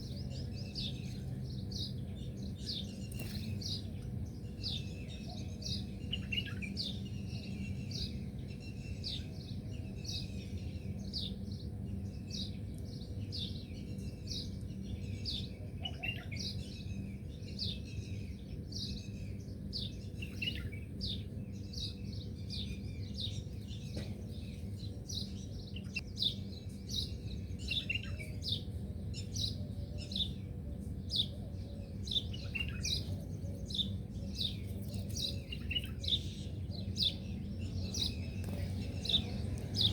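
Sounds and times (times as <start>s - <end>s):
small birds chirping: 0.0s - 39.9s
low background rumble: 28.4s - 39.9s.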